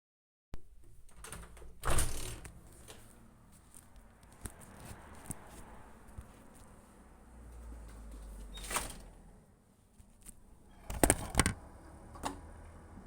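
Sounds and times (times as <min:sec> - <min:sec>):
night traffic noise: 0:00.6 - 0:13.0
recording device handling rustle: 0:10.0 - 0:11.6.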